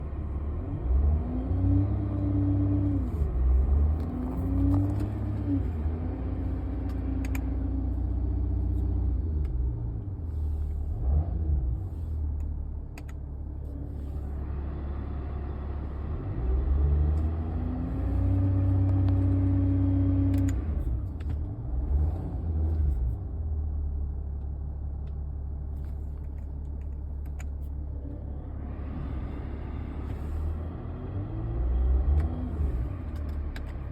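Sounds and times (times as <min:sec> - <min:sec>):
diesel engine rumble: 0:00.0 - 0:33.9.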